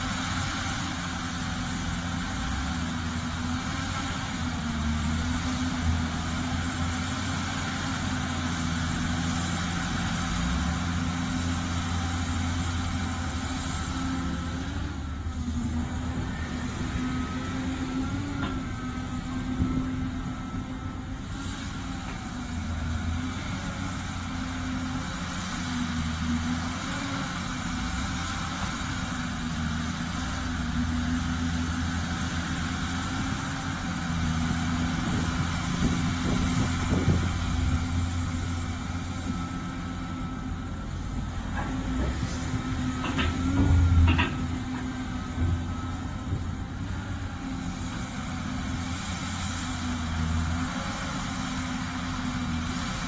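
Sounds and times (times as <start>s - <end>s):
excavator diesel engine running: 0.0s - 53.0s.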